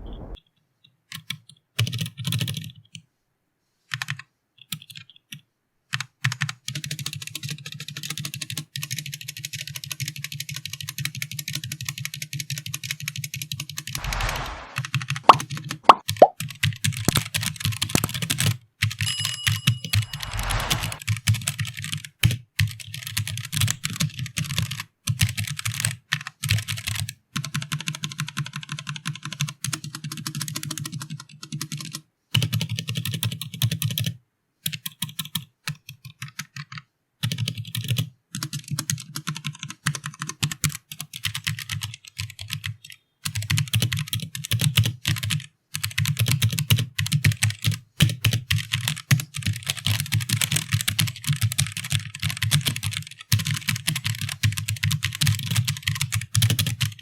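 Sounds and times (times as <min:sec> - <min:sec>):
mechanical keyboard typing: 0:01.8 - 0:02.9, 0:03.9 - 0:14.6, 0:22.6 - 0:34.1, 0:34.7 - 0:57.0.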